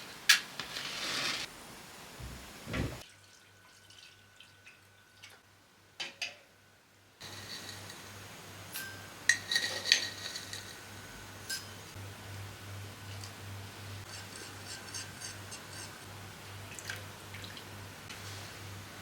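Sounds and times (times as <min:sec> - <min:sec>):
dishes and utensils clinking: 0:07.2 - 0:12.0, 0:14.1 - 0:16.1.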